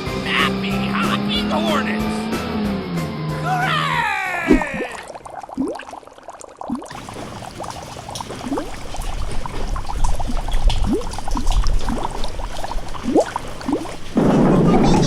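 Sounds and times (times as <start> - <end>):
water pouring and splashing: 4.4 - 15.0
bubbly plinks: 4.5 - 14.3.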